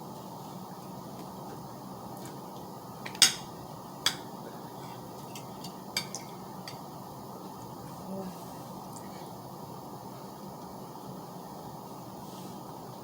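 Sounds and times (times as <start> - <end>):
cutlery clinking on a plate: 3.1 - 3.5.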